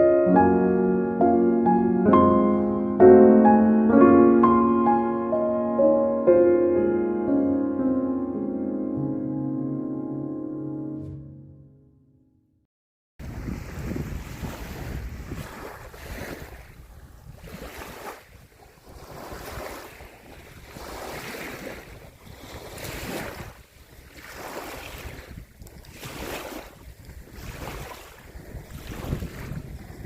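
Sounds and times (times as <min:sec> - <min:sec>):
small waves washing on shore: 0:13.2 - 0:30.0
wind buffeting microphone: 0:13.2 - 0:30.0.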